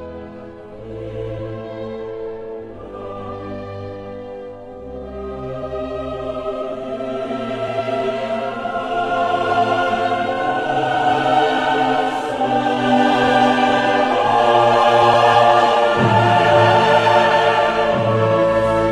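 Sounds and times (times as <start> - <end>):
choir-like background music: 0.0 - 18.9.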